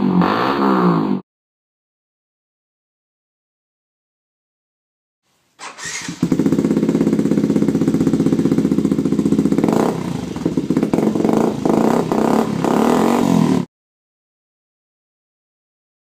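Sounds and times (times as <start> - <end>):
motorcycle engine revving: 0.0 - 1.2, 5.6 - 13.7.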